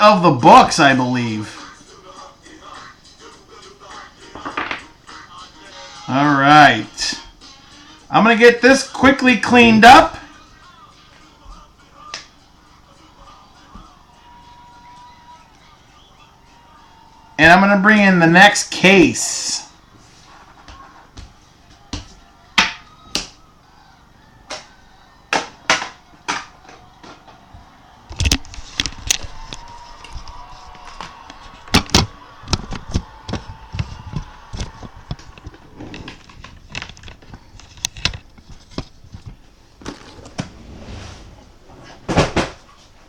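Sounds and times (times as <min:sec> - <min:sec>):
faint background music: 0:00.0 - 0:32.4.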